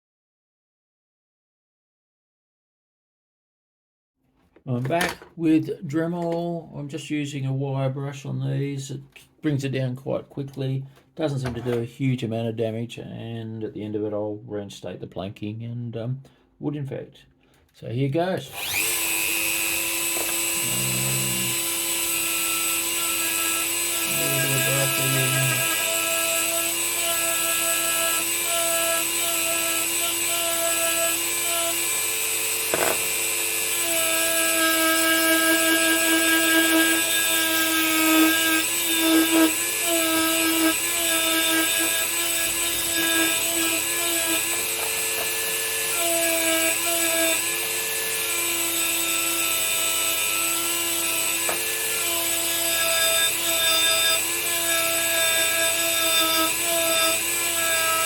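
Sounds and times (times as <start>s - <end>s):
rotary tool wire brush whining: 18.5s - 58.0s.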